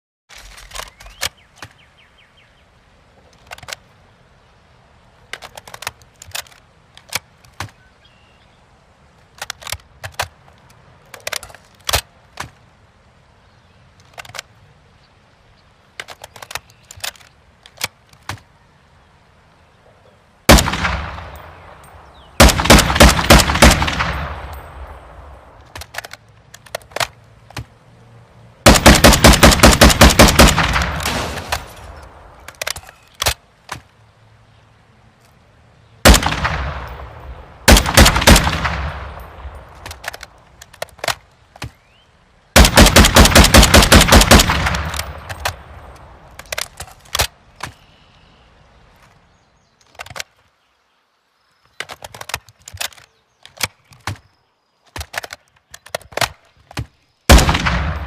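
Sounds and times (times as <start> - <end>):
rifle clicks: 3.3 - 3.9, 5.3 - 7.8, 9.2 - 12.6, 16.0 - 18.4, 20.5 - 27.7, 28.7 - 33.8, 36.0 - 41.8, 42.6 - 47.8, 51.7 - 58.0
automatic gunfire: 20.5 - 21.4, 22.4 - 24.6, 28.7 - 31.8, 36.1 - 36.9, 37.7 - 39.2, 42.6 - 45.5, 57.3 - 58.0
rifle shot: 20.5 - 25.3, 28.6 - 32.3, 36.0 - 40.0, 42.6 - 45.8, 57.3 - 58.0.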